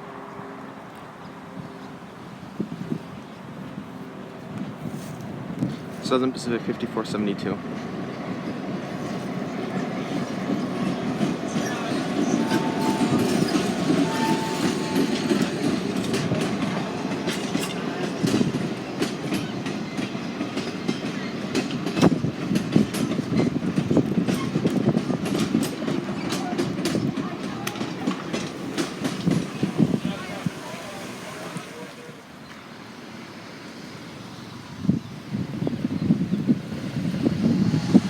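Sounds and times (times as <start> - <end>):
train rolling past: 0.0 - 38.0
wheels clacking over rail joints: 7.6 - 32.7.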